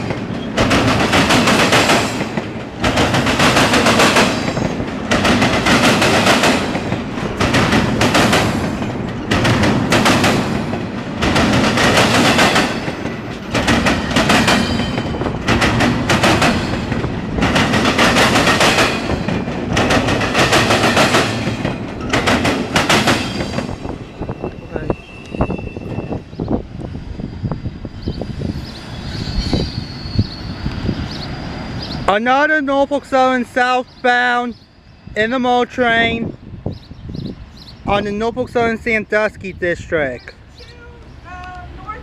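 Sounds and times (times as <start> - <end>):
wheels clattering over rail joints: 0.0 - 24.0
freight train passing: 0.0 - 42.0.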